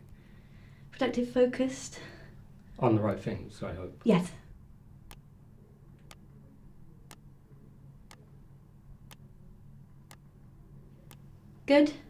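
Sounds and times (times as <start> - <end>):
faint low hum: 0.0 - 12.0.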